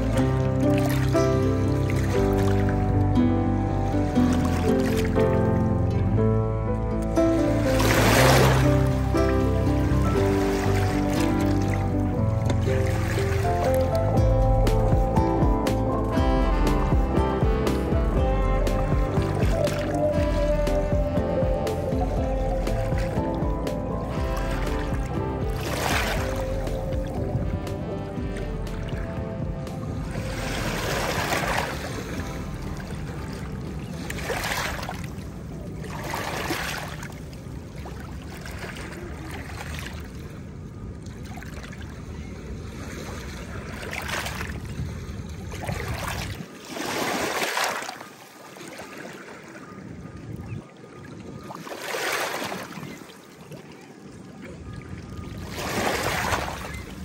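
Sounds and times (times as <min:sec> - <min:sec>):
ocean surf breaking: 0:07.1 - 0:13.8, 0:27.2 - 0:37.4.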